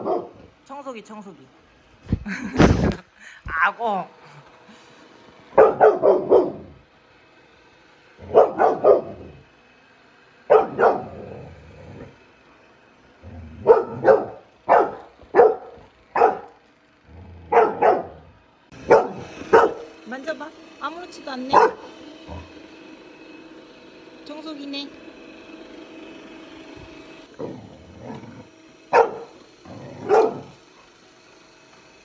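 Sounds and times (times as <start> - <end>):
puppy barking: 0.0 - 0.5, 5.5 - 6.7, 8.2 - 9.4, 10.5 - 11.4, 13.6 - 16.6, 17.5 - 19.9, 21.5 - 22.5, 28.9 - 30.6.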